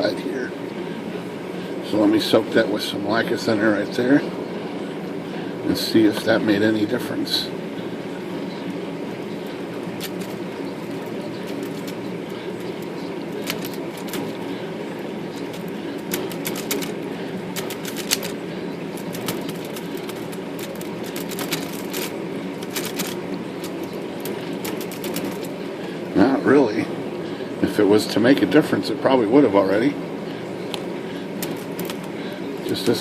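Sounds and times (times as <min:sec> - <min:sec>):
typewriter keys clicking and clacking: 0:10.0 - 0:10.3, 0:11.4 - 0:12.0, 0:13.4 - 0:14.4, 0:15.4 - 0:17.0, 0:17.6 - 0:18.4, 0:19.0 - 0:25.5, 0:31.4 - 0:32.1.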